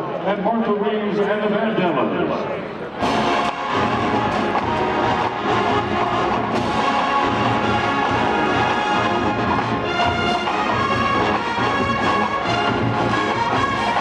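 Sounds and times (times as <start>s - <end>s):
brass section: 2.3s - 14.0s
marching band playing: 2.9s - 14.0s.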